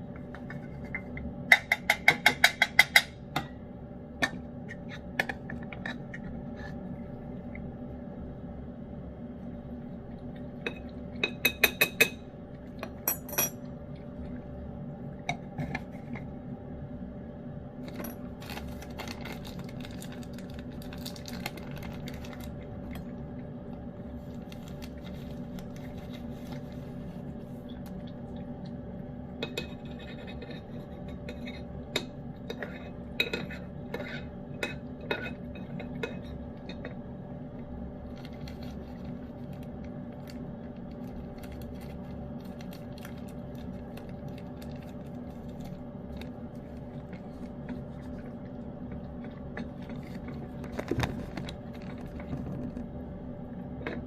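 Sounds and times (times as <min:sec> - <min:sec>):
cat eating from a bowl: 0:17.9 - 0:53.0.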